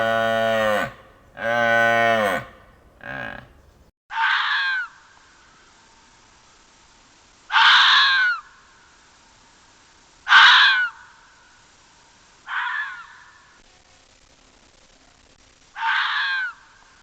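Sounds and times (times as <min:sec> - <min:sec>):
animal harsh raspy calls: 0:00.0 - 0:05.0, 0:07.5 - 0:08.5, 0:10.3 - 0:11.1, 0:12.5 - 0:13.4, 0:15.8 - 0:16.7.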